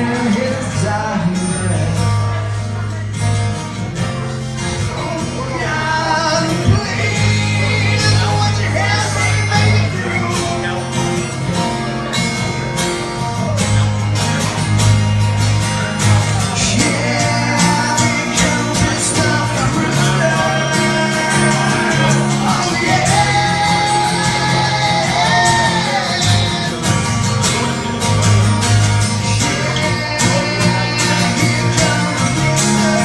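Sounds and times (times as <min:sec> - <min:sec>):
sliding guitar melody: 0:00.0 - 0:33.0
strummed guitar: 0:00.0 - 0:33.0
person singing: 0:16.4 - 0:33.0.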